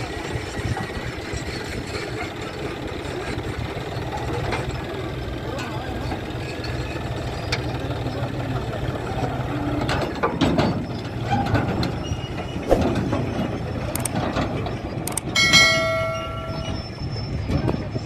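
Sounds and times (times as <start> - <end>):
diesel engine running: 0.0 - 18.0
metallic clanks and rattles: 9.7 - 16.9.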